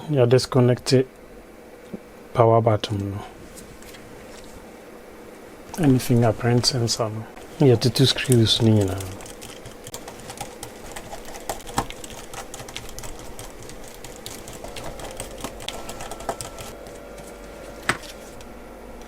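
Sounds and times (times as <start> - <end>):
hand tools clicking on phone parts: 8.2 - 16.7.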